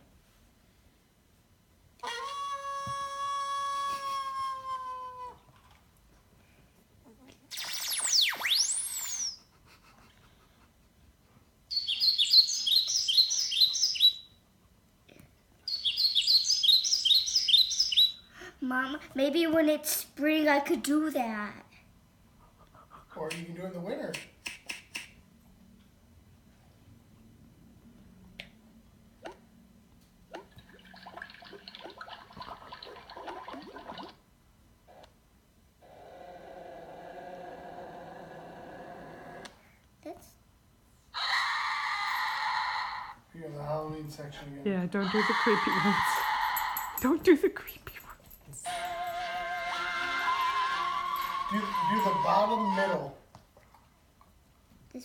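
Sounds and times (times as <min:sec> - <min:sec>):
rapid high bird chirps: 0:07.5 - 0:09.4, 0:11.7 - 0:14.4, 0:15.7 - 0:18.3
sliding whistle sound effect: 0:07.5 - 0:09.4
water dripping and bubbling: 0:30.3 - 0:34.2.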